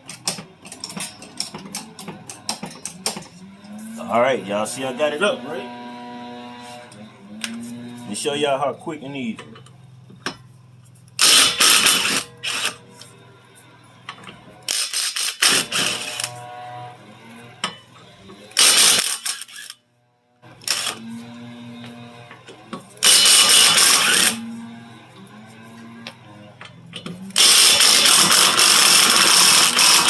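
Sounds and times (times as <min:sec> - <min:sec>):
impact wrench hammering: 0:11.2 - 0:12.7, 0:14.7 - 0:16.3, 0:18.6 - 0:19.8, 0:23.0 - 0:24.4, 0:27.4 - 0:30.0.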